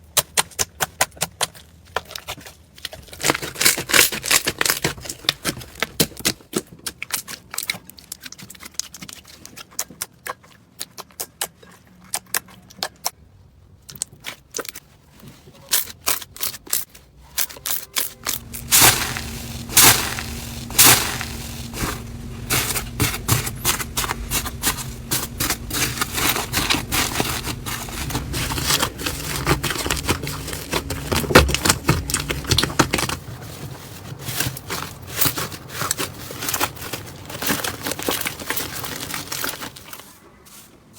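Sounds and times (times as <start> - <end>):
steady low hum: 18.2 - 32.9.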